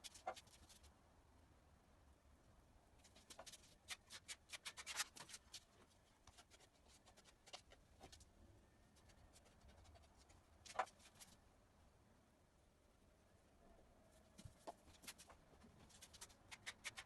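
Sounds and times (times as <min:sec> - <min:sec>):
scratches: 0:00.0 - 0:00.9, 0:03.0 - 0:08.3, 0:08.9 - 0:11.4, 0:14.2 - 0:17.0.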